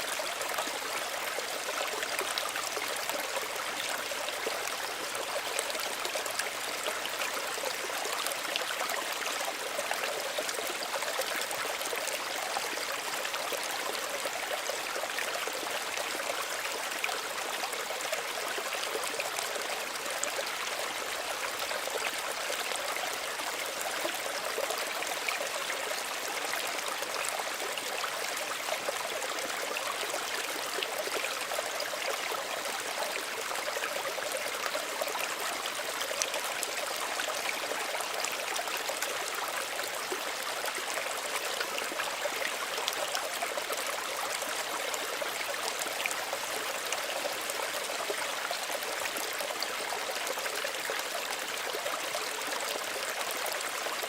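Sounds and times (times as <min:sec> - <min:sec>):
stream trickling over stones: 0:00.0 - 0:54.0.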